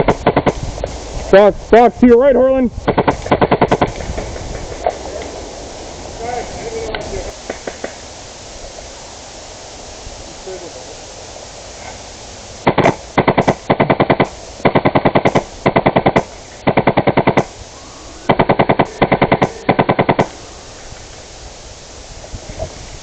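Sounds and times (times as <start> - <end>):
airsoft gun firing bursts: 0.0 - 0.6, 2.8 - 4.1, 12.6 - 17.6, 18.3 - 20.4.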